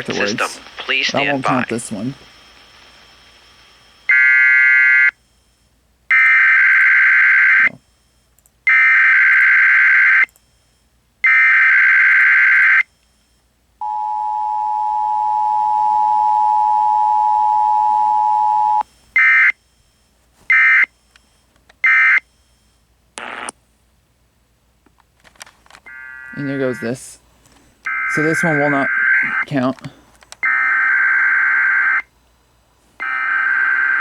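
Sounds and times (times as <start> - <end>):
alert data bursts: 27.9 - 29.7.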